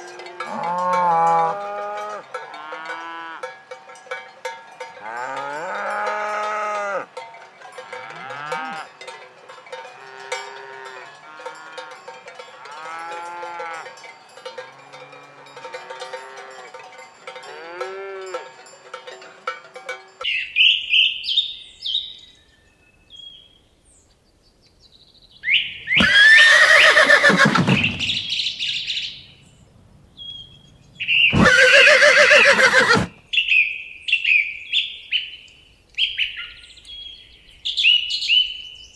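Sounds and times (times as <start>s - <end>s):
cowbells clanking: 0.0s - 20.4s
cattle mooing: 0.2s - 3.5s, 5.0s - 7.1s, 7.9s - 8.9s
small birds chirping: 20.1s - 38.9s
drawn-out animal calls: 26.0s - 28.3s, 31.3s - 33.2s.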